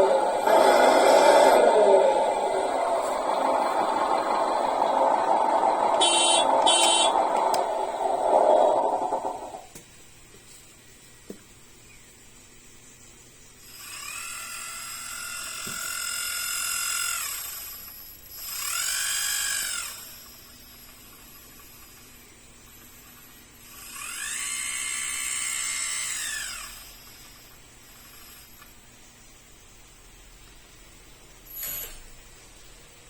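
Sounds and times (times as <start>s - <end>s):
small high-speed motor whining: 0.0s - 9.7s, 13.6s - 28.7s.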